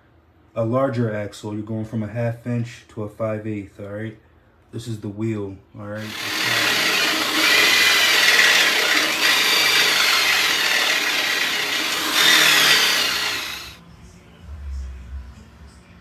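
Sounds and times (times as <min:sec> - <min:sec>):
power drill grinding with high whine: 0:06.0 - 0:13.8.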